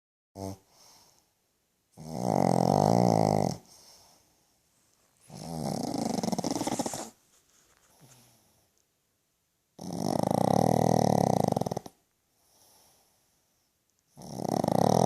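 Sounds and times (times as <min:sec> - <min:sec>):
dog snoring loudly: 0:00.4 - 0:01.0, 0:01.9 - 0:03.7, 0:05.2 - 0:07.2, 0:09.8 - 0:12.0, 0:14.1 - 0:15.0.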